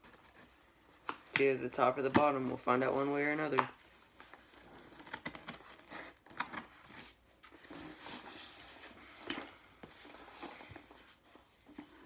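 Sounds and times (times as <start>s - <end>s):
cardboard scraping and tearing: 4.3s - 9.1s.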